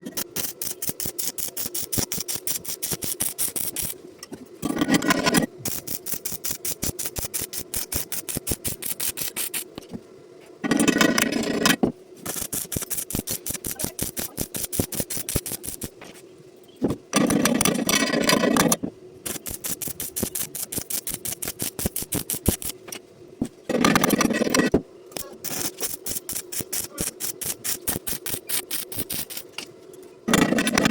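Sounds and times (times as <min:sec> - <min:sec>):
welding arc crackling: 0:00.0 - 0:04.0, 0:05.6 - 0:09.8, 0:12.2 - 0:16.0, 0:19.2 - 0:22.8, 0:25.1 - 0:29.6
steady hum: 0:00.0 - 0:30.9.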